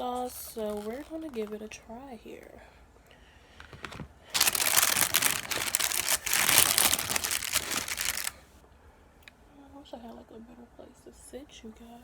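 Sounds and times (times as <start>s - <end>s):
food packaging crinkling: 0.3s - 1.6s, 3.6s - 8.5s.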